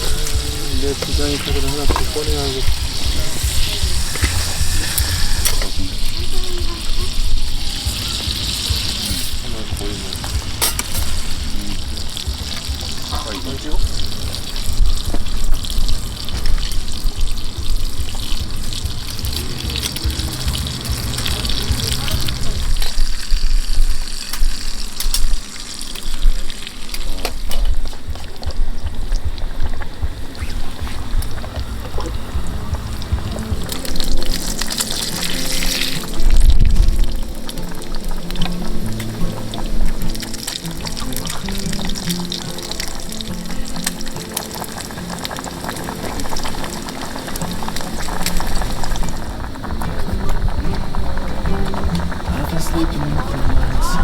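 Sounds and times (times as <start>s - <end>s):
camp stove low rumble: 0.0s - 54.0s
food sizzling in a pan: 0.0s - 54.0s.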